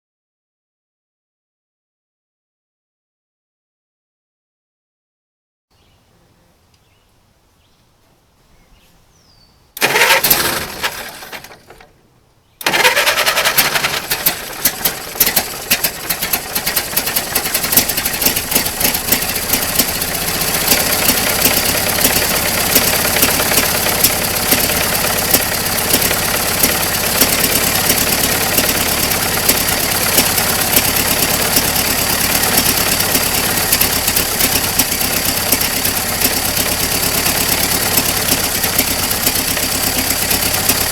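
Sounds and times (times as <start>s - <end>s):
car engine starting and running: 9.7s - 40.9s
engine irregular pops: 9.8s - 40.9s.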